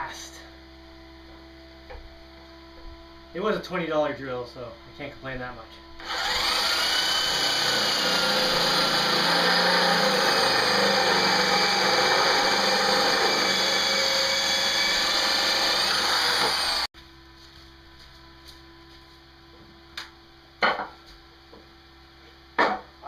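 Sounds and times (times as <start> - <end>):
electric drill drilling: 6.0 - 16.9.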